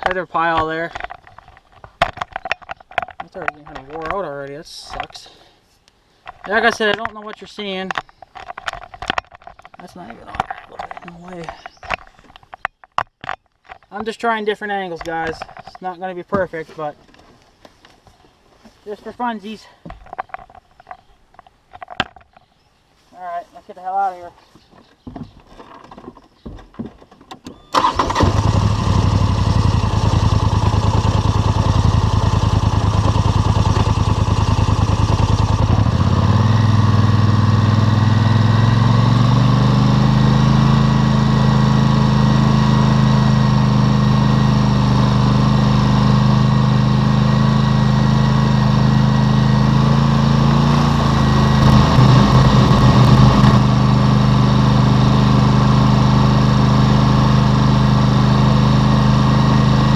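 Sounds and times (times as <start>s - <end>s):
atv engine running: 6.3s - 7.1s, 27.8s - 59.9s.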